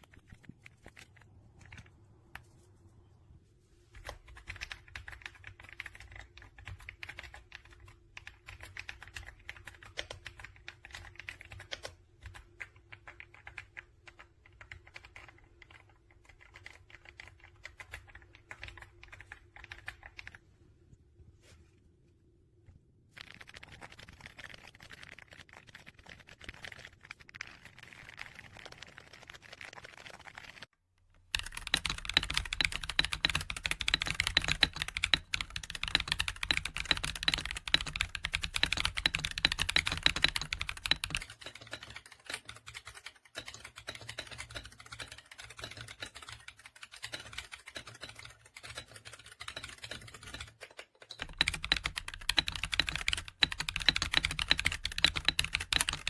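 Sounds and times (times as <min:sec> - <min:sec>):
rapid typing on mechanical keyboard: 0:00.0 - 0:02.0, 0:04.0 - 0:20.5, 0:23.1 - 0:56.0.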